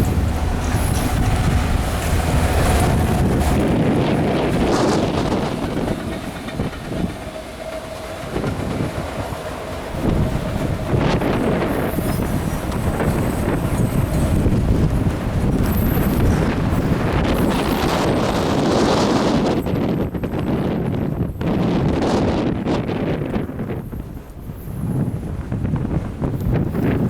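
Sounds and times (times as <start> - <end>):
wheels clacking over rail joints: 0.0 - 20.4
train passing: 0.0 - 27.0.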